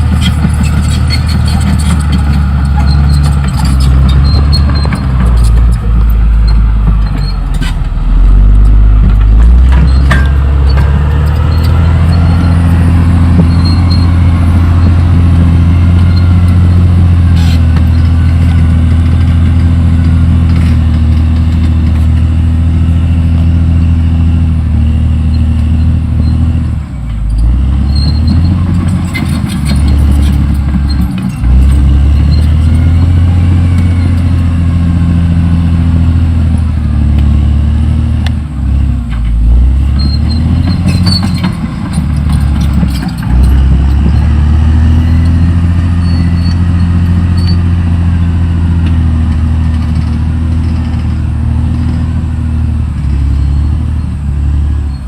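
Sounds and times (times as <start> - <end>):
bulldozer diesel engine running: 0.0 - 55.0.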